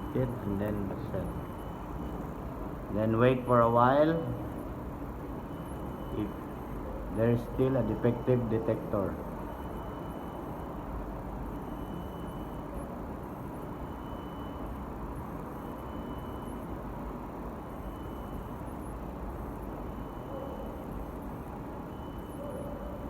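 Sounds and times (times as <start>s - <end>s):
background rumble and hiss: 0.0s - 14.1s.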